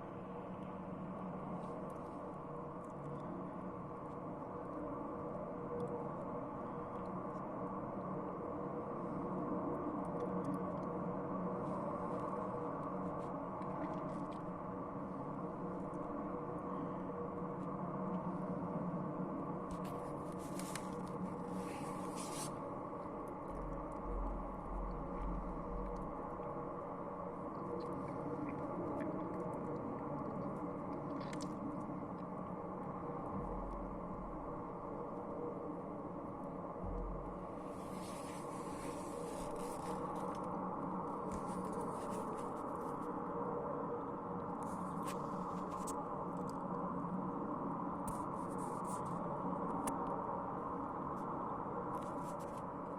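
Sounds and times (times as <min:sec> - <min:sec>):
low industrial rumble with hum: 0:00.0 - 0:42.4
light scraping and rustling: 0:19.8 - 0:22.6, 0:37.7 - 0:40.5, 0:41.3 - 0:43.0, 0:52.0 - 0:52.7
low rumble: 0:22.9 - 0:40.3.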